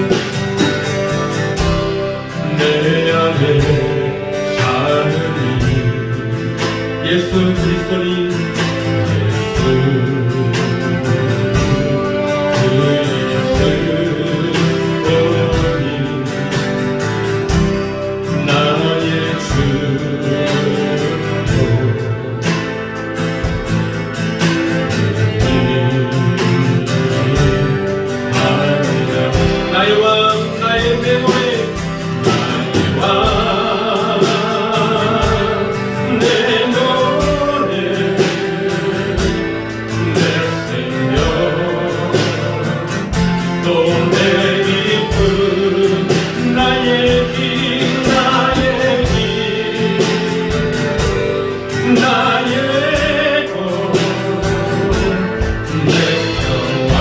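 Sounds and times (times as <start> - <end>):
guitar: 0.0 - 57.0
person singing with vibrato: 0.0 - 57.0
steady drum beat: 0.0 - 57.0.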